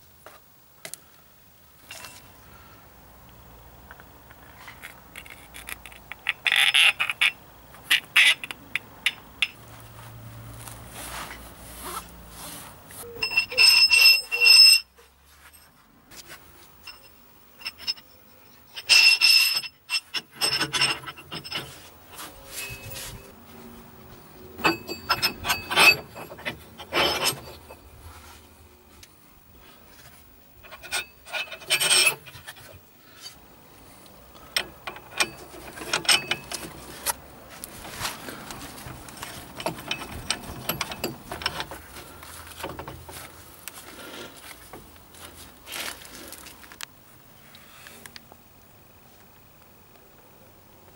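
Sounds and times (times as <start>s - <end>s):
metal clinks and scrapes: 1.8s - 2.3s, 4.4s - 9.6s, 13.0s - 23.3s, 24.6s - 28.4s, 30.0s - 33.4s, 34.4s - 43.4s
ringing metal clangs: 13.1s - 14.9s, 16.8s - 21.8s, 24.6s - 28.0s, 34.6s - 36.8s, 39.6s - 41.7s.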